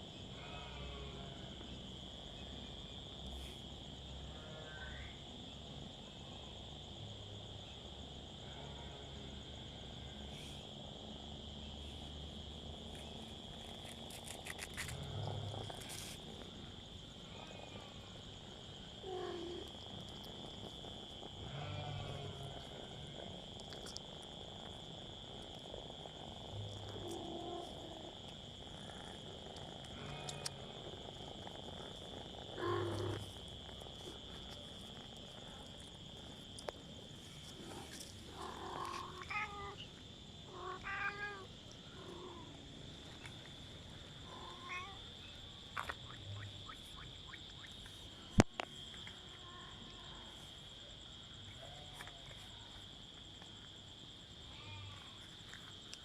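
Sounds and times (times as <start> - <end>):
crickets droning: 0.0 - 56.0
cats mewing: 19.0 - 34.2, 38.3 - 42.6, 44.3 - 45.0.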